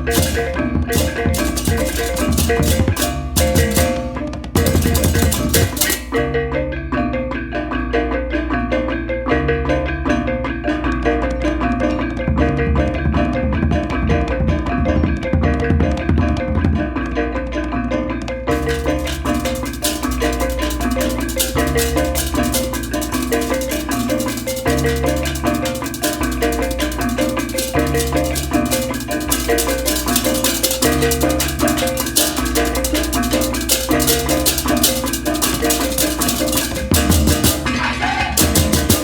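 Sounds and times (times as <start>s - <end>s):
cymbals clashing: 0.0s - 6.4s, 18.5s - 39.0s
hand drums: 0.0s - 6.6s, 8.0s - 39.0s.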